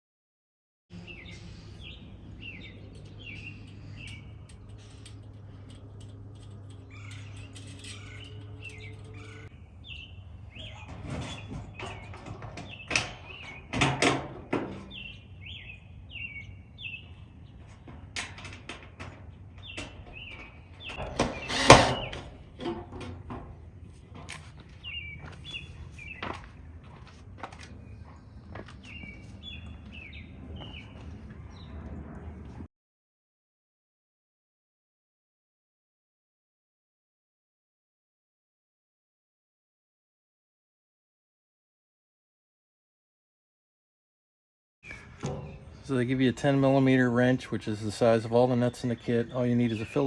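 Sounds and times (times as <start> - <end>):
birds chirping: 0.9 - 32.7, 44.8 - 50.0
sheet-metal panels knocking: 10.7 - 15.1, 17.6 - 23.6, 45.2 - 45.9.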